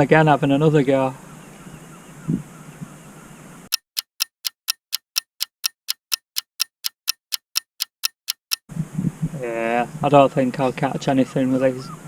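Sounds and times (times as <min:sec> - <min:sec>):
clock ticking: 0:03.7 - 0:08.7.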